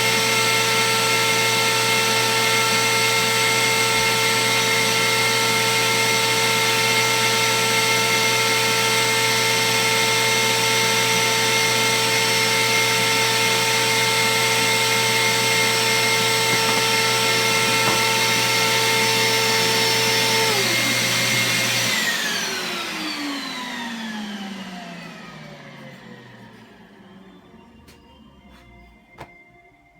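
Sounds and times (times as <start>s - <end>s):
router motor whining: 0.0s - 28.9s
second motor running: 11.9s - 28.9s.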